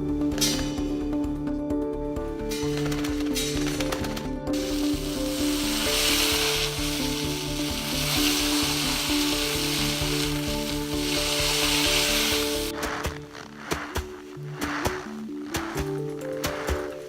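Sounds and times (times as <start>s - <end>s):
background music with held notes: 0.0s - 17.0s
dense crackling hiss: 3.9s - 15.8s.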